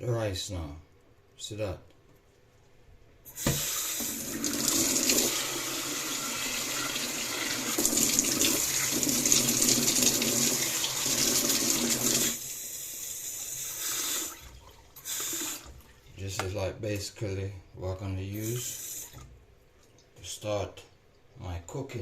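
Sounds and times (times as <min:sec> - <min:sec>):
tap running water into sink: 0:03.4 - 0:12.4.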